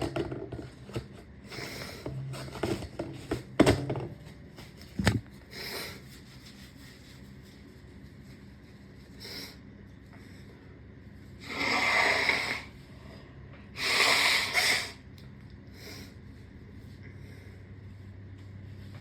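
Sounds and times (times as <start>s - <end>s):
tissue rubbing nose: 5.0s - 9.2s
person blowing nose: 13.8s - 15.0s.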